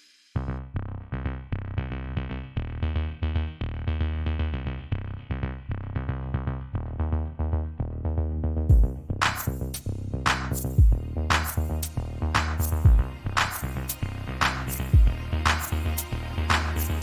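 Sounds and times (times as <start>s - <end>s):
drum-machine beat: 8.7s - 9.6s, 10.3s - 17.0s.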